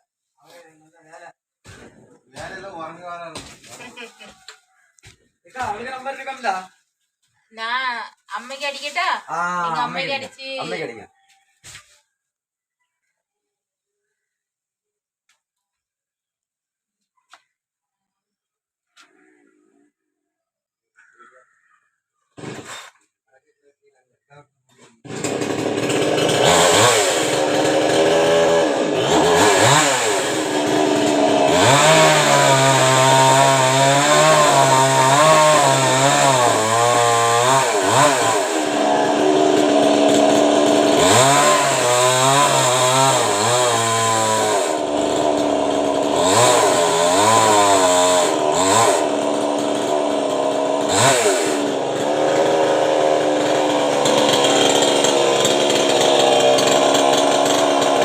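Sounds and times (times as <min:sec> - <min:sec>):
chainsaw cutting wood: 0:22.4 - 0:23.2, 0:24.8 - 0:58.0.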